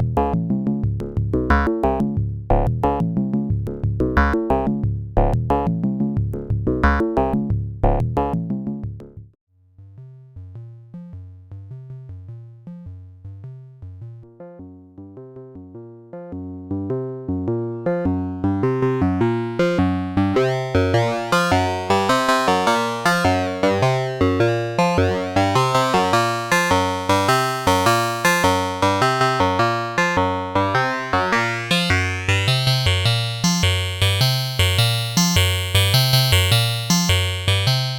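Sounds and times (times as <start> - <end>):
buzzy synthesizer bass-line sequence: 19.2 - 36.7
punchy synthesizer pattern: 20.4 - 37.9.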